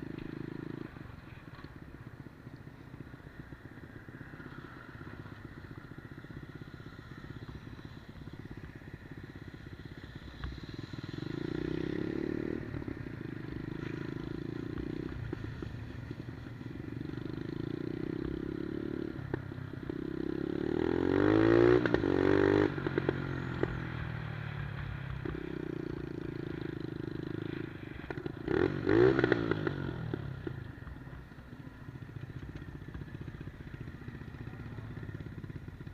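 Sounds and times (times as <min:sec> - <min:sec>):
minibike engine revving: 0:17.0 - 0:23.9, 0:25.2 - 0:30.6.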